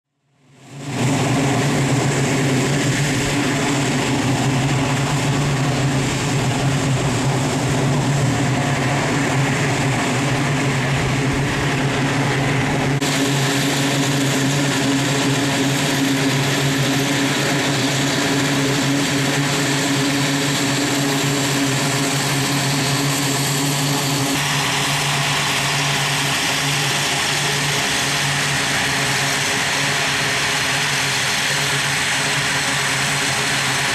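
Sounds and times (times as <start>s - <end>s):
turboprop engines droning: 0.3s - 33.9s.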